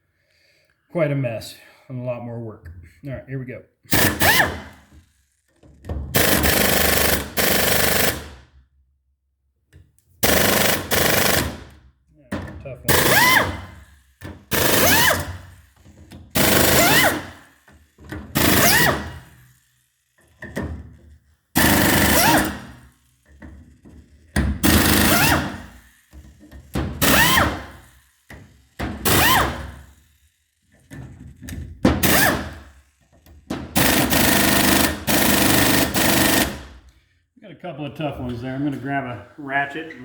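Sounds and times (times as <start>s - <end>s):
impact tool hammering bolts: 3.9s - 5.0s, 5.6s - 8.3s, 12.3s - 19.4s, 21.6s - 29.8s, 30.8s - 36.8s.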